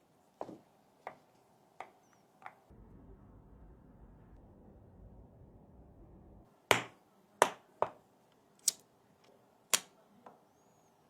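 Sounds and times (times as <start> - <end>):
low steady hum: 2.7 - 6.5.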